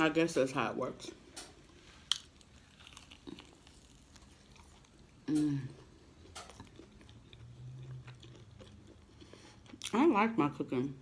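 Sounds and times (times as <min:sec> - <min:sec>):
person chewing: 0:01.6 - 0:10.0
person humming: 0:05.3 - 0:05.8.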